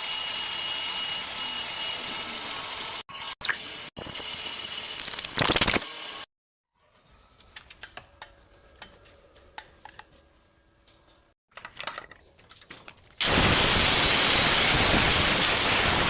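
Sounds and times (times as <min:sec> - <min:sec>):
power tool whining: 0:00.0 - 0:06.3, 0:13.2 - 0:16.0.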